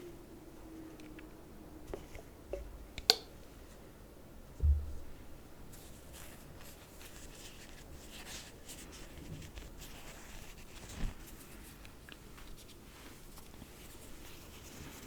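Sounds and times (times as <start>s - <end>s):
soft low thumps: 4.6s - 5.3s
cotton pads rustling: 5.7s - 15.0s.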